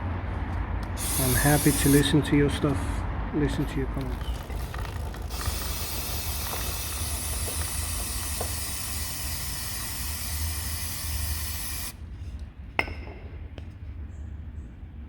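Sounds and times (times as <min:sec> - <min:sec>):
aerosol can spraying: 0:01.0 - 0:02.1, 0:05.3 - 0:12.0.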